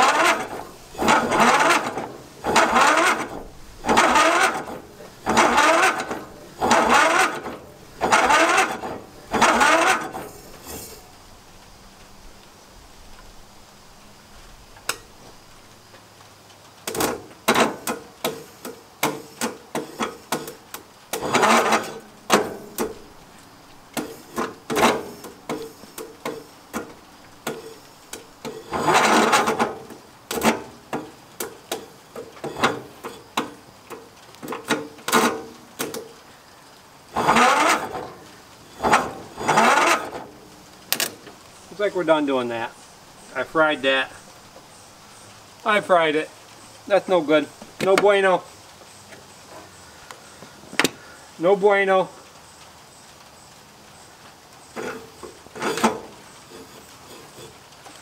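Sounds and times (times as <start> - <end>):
engine starter clicks: 0.0 - 11.1, 16.8 - 23.3, 23.9 - 36.3, 37.1 - 41.5, 54.7 - 58.0
starter motor cranking: 0.0 - 11.2, 16.8 - 36.3, 37.1 - 41.9, 54.6 - 58.0.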